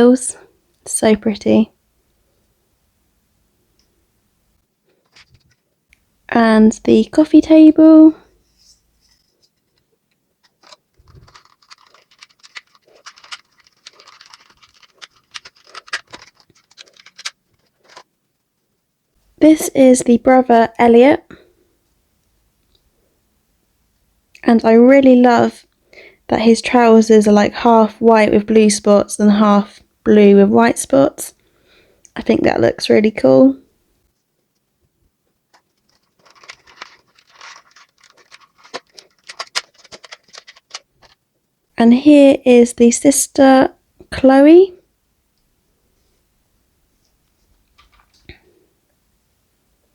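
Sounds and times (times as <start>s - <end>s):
packaging crinkling and rustling: 9.1s - 18.2s, 35.4s - 41.3s.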